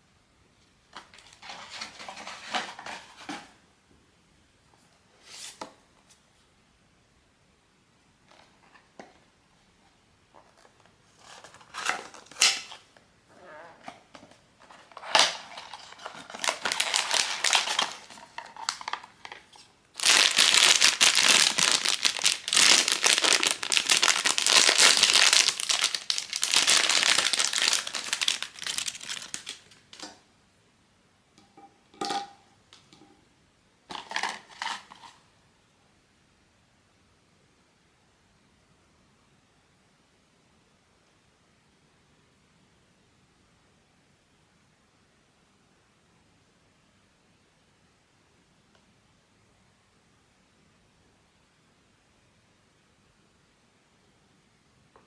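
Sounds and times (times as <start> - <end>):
packaging taps and rustles: 14.1 - 30.2
plastic wrapper crinkling: 14.6 - 30.2.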